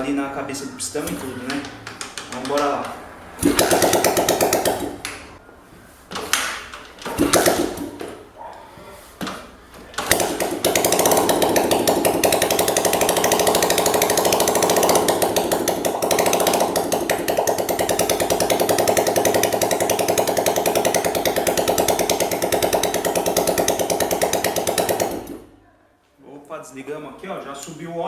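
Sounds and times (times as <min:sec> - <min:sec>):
motorcycle engine running: 0:03.4 - 0:05.4, 0:07.0 - 0:08.2, 0:10.0 - 0:25.6.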